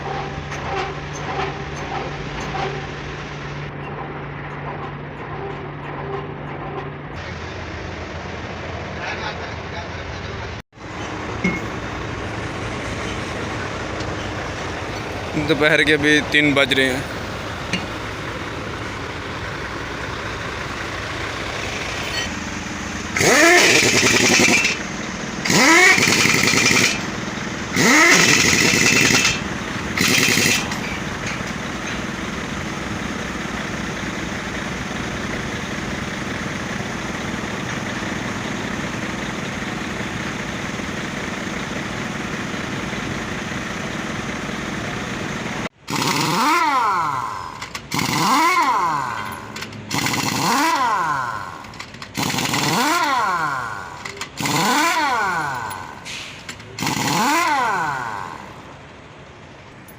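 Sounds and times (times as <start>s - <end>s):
engine running steadily: 0.0s - 59.9s
motor revving in bursts: 23.0s - 31.2s, 45.8s - 58.6s.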